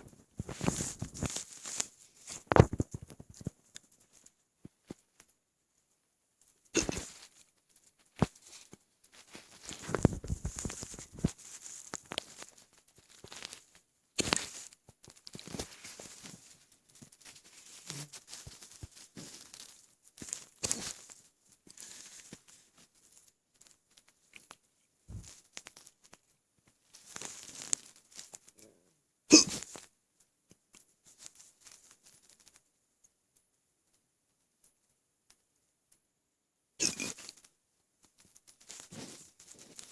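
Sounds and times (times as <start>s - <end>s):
sharp hiccups: 6.8s - 7.1s, 29.3s - 29.6s, 36.8s - 37.2s.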